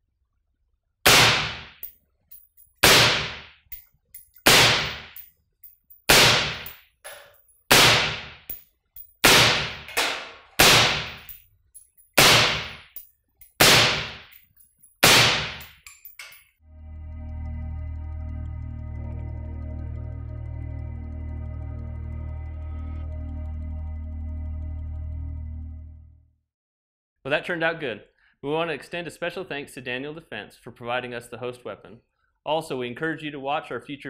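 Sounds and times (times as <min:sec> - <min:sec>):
suppressed rifle shots: 0:09.2 - 0:11.2.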